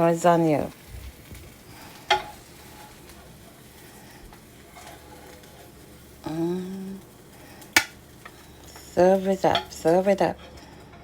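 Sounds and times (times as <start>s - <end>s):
faint kitchen background: 0.0s - 11.0s
person humming: 6.2s - 7.1s.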